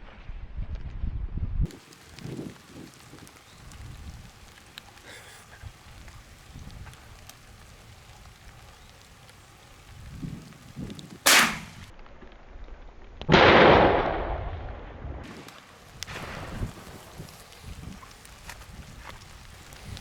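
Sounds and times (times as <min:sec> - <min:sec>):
shotgun shots: 0:11.3 - 0:11.9, 0:13.3 - 0:14.4.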